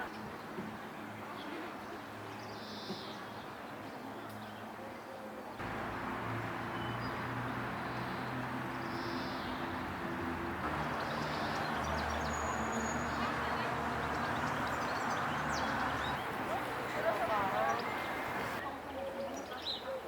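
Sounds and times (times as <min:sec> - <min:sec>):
city traffic hum: 0:05.6 - 0:18.6
songbird chirping: 0:05.6 - 0:18.6.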